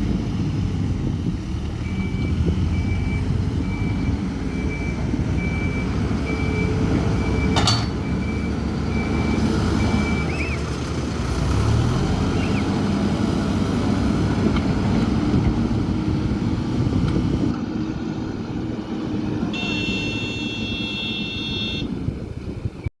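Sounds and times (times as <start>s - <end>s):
backhoe diesel engine running: 0.0s - 22.6s
reversing alarm beeping: 1.8s - 10.3s, 19.5s - 21.9s.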